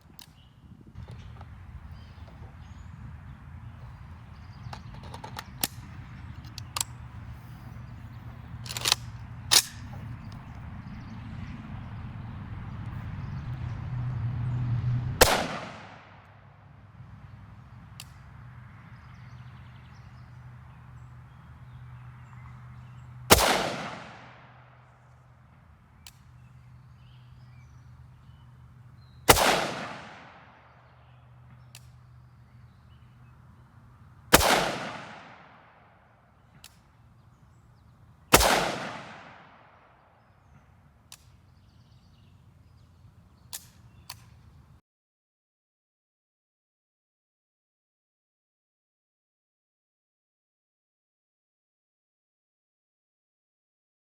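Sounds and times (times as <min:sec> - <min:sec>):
rifle shots with echo: 0:15.2 - 0:16.2, 0:23.3 - 0:24.9, 0:29.3 - 0:30.8, 0:34.3 - 0:36.0, 0:38.3 - 0:40.0
light clicks: 0:18.0 - 0:18.2, 0:31.6 - 0:32.1, 0:43.5 - 0:44.4.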